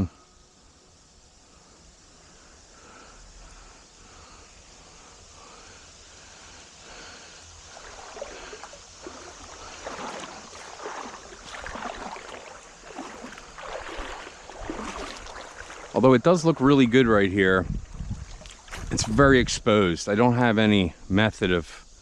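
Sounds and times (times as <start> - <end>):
creek water running: 2.0 - 21.6
water sloshing: 7.0 - 19.5.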